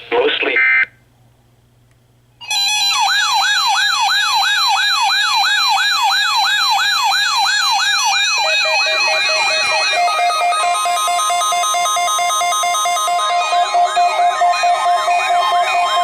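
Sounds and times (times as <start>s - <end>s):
electronic siren sweeping: 2.4s - 16.0s
steady synthesized tones: 2.5s - 16.0s.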